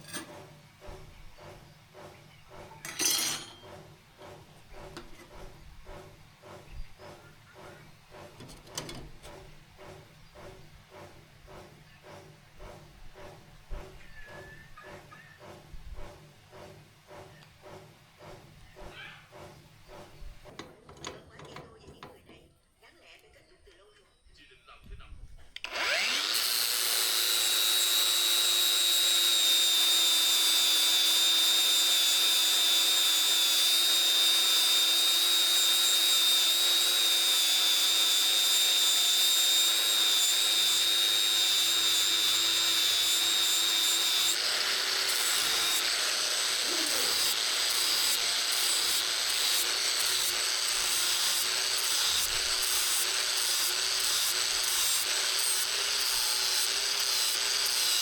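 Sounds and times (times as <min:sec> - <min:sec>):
electric power tool whining: 0:25.6 - 0:58.0.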